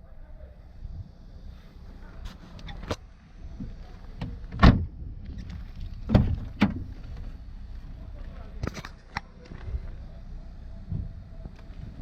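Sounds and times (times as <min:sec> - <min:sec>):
knocks and clunks: 0:03.6 - 0:07.4.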